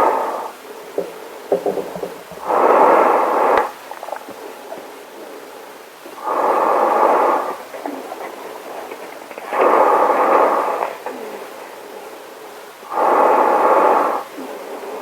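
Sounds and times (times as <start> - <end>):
breathing through gas mask filter: 2.0 - 15.0
small crackles: 3.5 - 5.0.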